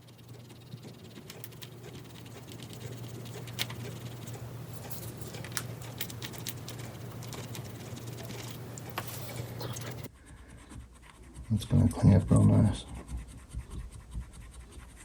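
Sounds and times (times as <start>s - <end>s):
rotary tool humming: 0.0s - 11.7s.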